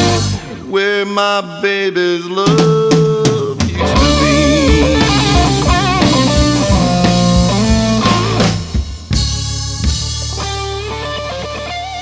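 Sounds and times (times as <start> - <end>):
guitar lead with bent notes: 0.0 - 0.8, 3.6 - 12.0
blues band playing: 0.0 - 1.0, 2.4 - 12.0.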